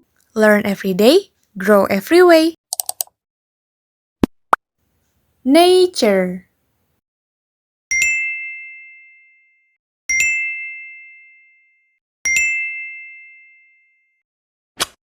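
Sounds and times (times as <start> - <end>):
bell-like chime dings: 7.9 - 14.2.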